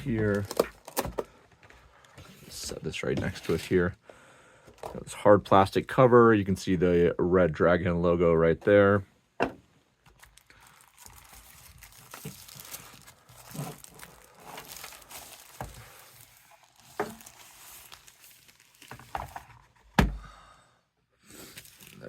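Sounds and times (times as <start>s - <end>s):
plastic and paper crinkling: 0.0s - 3.9s, 10.0s - 19.8s, 21.4s - 22.0s.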